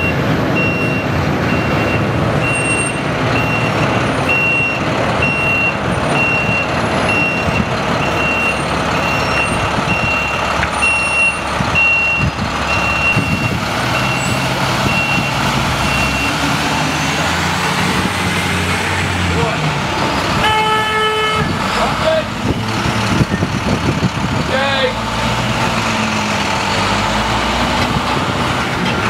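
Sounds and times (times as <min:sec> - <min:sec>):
truck reversing alarm beeps: 0:00.0 - 0:17.2
surrounding traffic: 0:00.0 - 0:29.0
truck engine rumble: 0:00.0 - 0:29.0.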